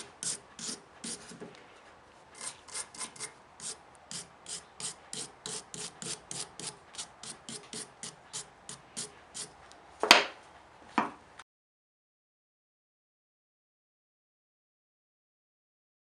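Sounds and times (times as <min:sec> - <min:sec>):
file rasping on steel: 0:00.0 - 0:01.4, 0:02.4 - 0:09.6.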